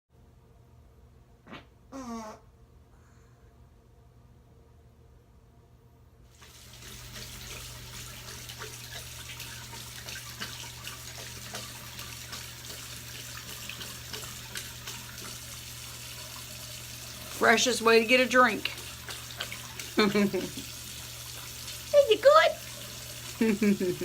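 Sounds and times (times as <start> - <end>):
water tap running: 6.3 - 24.0
dog lapping water: 6.4 - 24.0.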